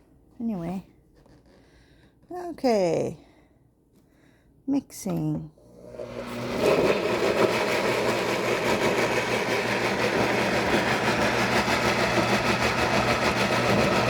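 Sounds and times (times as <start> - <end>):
blender motor running: 5.6 - 14.0.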